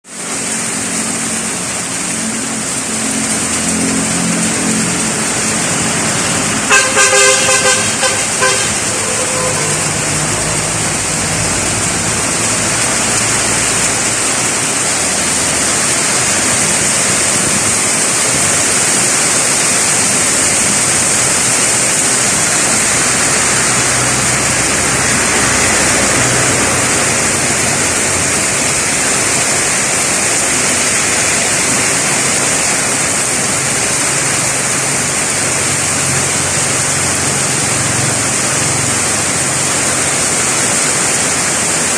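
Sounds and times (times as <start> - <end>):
heavy rain falling: 0.0 - 41.9
vehicle horn short honks: 6.7 - 9.9.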